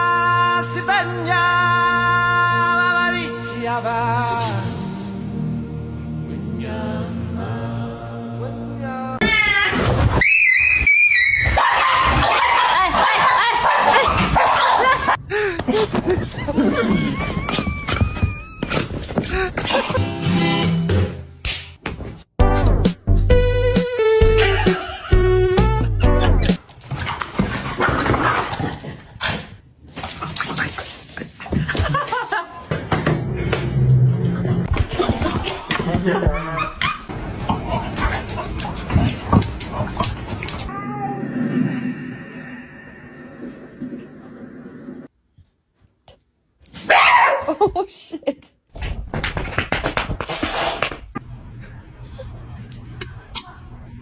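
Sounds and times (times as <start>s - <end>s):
cat screeching: 9.2s - 12.2s
pet animal breathing: 37.1s - 40.7s.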